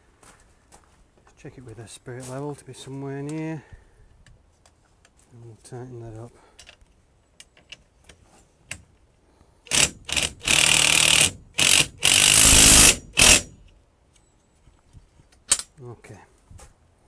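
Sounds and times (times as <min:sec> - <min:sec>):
ratchet tool rattling: 0:09.7 - 0:13.6.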